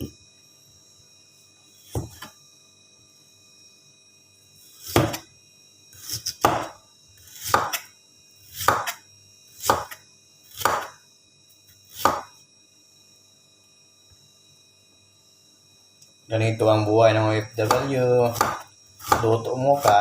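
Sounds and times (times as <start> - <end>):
knife chopping on cutting board: 1.9 - 2.3, 4.8 - 5.3, 6.0 - 7.9, 8.5 - 9.0, 9.6 - 11.0, 11.9 - 12.4, 17.6 - 20.0.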